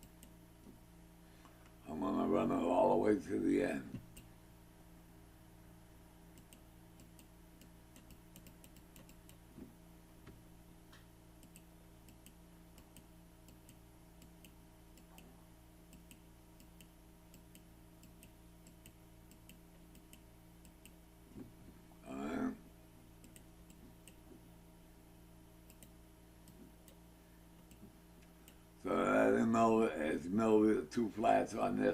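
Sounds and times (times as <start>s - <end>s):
low electrical hum: 0.0s - 31.9s
computer mouse clicking: 6.4s - 9.4s, 11.4s - 15.3s, 15.9s - 21.0s, 23.2s - 24.3s, 25.6s - 27.0s, 27.6s - 28.6s.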